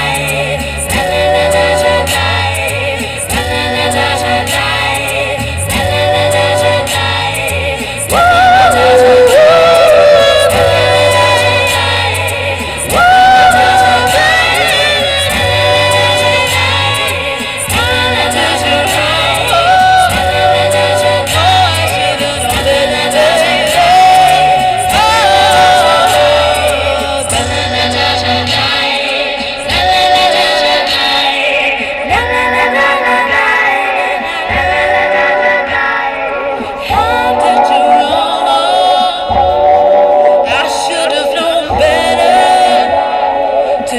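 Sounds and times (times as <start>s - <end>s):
low bass notes: 0.0s - 31.1s
people singing in harmony: 0.0s - 43.9s.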